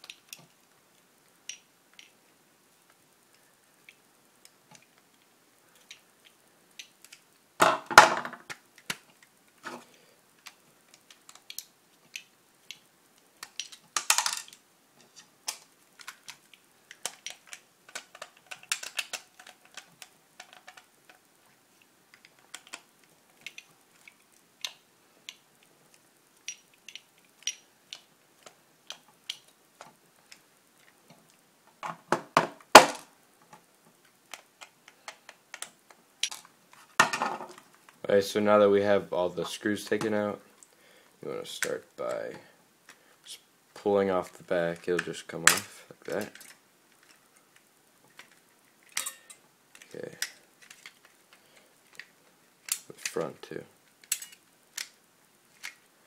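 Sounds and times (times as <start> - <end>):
plastic parts clattering: 5.8 - 12.8, 13.4 - 21.2, 34.3 - 38.0, 44.2 - 55.9.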